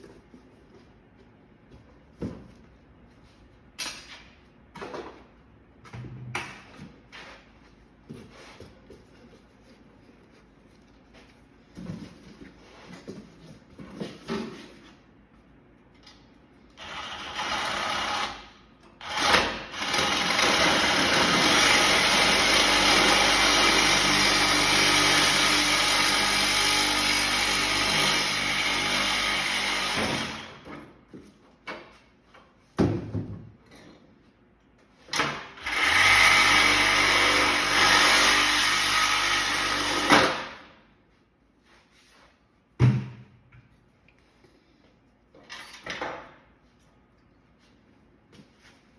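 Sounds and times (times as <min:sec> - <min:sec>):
handheld power tool running: 0:16.8 - 0:30.6, 0:35.6 - 0:40.4.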